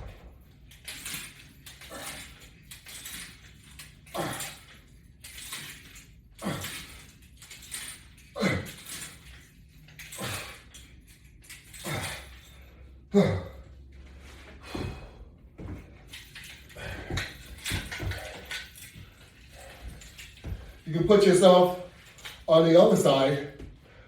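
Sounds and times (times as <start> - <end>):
man breathing hard: 4.1 - 4.8, 6.4 - 7.2, 10.0 - 10.9, 11.7 - 15.8, 16.6 - 20.9, 23.6 - 24.0.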